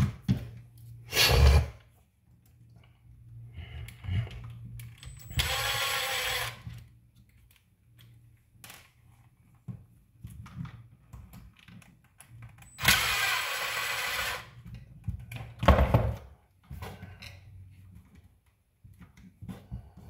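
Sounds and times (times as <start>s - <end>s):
handheld power tool motor: 5.1s - 6.8s, 12.7s - 14.6s.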